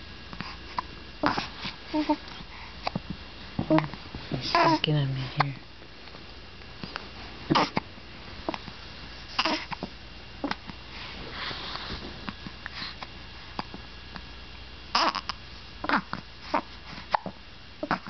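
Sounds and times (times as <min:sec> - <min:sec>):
infant hiccuping: 0:04.5 - 0:04.8, 0:07.5 - 0:07.8, 0:09.4 - 0:09.7, 0:14.9 - 0:16.2, 0:17.1 - 0:18.0.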